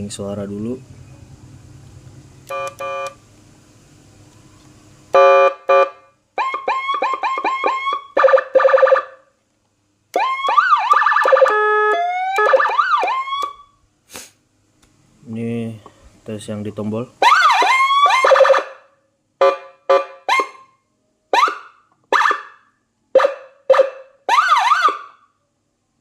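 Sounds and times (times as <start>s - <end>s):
electronic siren tones: 2.5s - 3.2s, 5.2s - 9.2s, 10.2s - 13.8s, 17.2s - 18.8s
short beeps: 2.5s - 3.2s.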